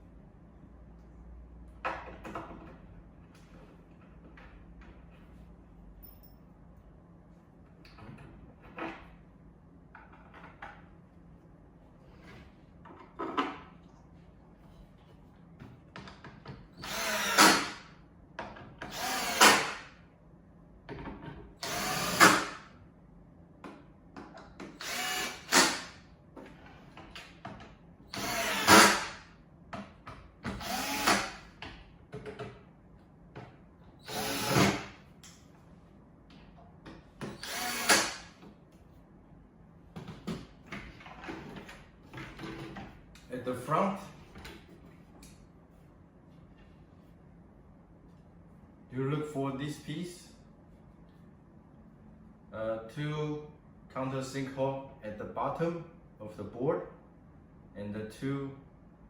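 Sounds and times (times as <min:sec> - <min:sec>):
power drill driving screws: 0:16.8 - 0:17.8, 0:18.8 - 0:19.8, 0:21.6 - 0:22.6, 0:24.8 - 0:26.0, 0:28.1 - 0:29.2, 0:30.5 - 0:31.4, 0:34.0 - 0:34.9, 0:37.3 - 0:38.3.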